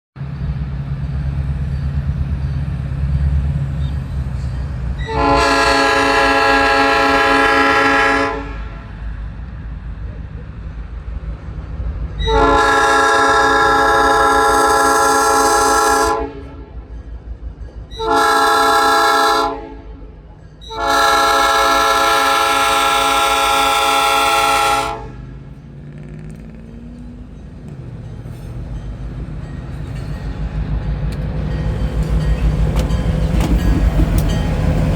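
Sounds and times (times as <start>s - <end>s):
train rumbling past: 0.2s - 34.9s
locomotive air horn blasts: 5.0s - 9.1s, 12.2s - 16.9s, 18.0s - 25.5s.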